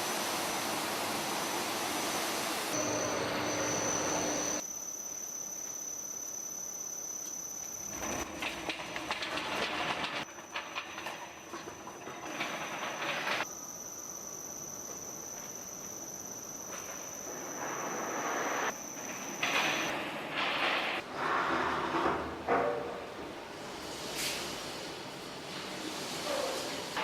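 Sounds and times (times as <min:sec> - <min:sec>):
carpet washing machine whine: 0:00.0 - 0:04.6, 0:07.7 - 0:20.2.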